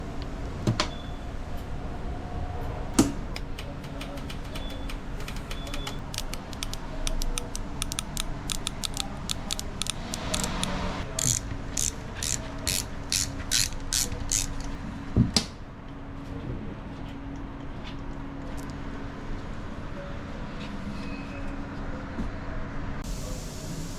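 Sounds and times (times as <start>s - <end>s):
ratchet wrench clicking: 3.8s - 14.7s.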